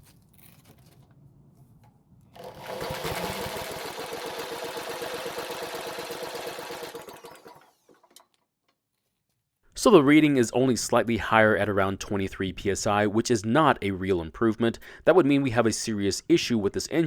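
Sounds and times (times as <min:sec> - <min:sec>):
power drill spinning engine: 0:02.4 - 0:08.2.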